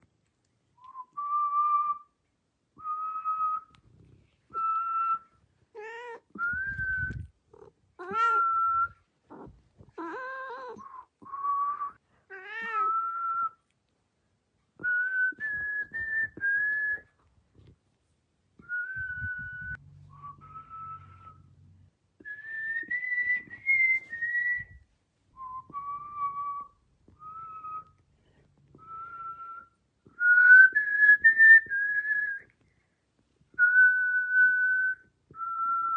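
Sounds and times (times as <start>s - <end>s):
cat meowing: 5.8s - 6.4s, 9.3s - 10.8s, 12.3s - 13.0s
person whistling short notes: 6.4s - 7.2s, 14.8s - 17.1s, 18.6s - 21.5s, 22.2s - 24.8s.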